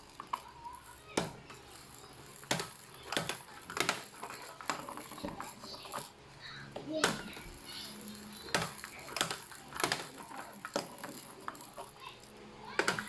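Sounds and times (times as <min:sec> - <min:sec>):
plastic balls clattering down ramp: 0:08.0 - 0:13.0.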